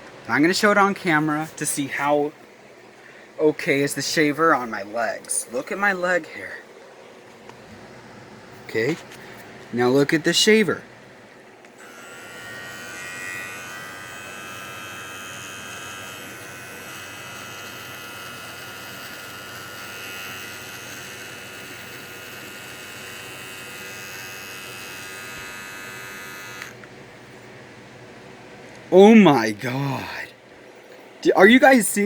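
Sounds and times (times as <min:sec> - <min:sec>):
electric body trimmer buzzing: 0:11.7 - 0:26.9.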